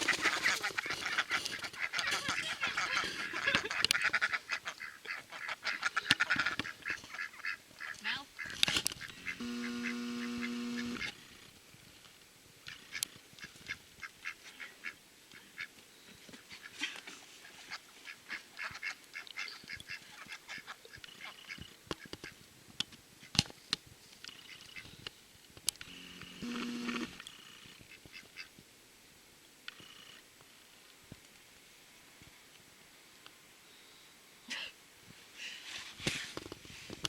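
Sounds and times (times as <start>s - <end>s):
ducks quacking: 0.0s - 11.2s, 16.5s - 22.4s.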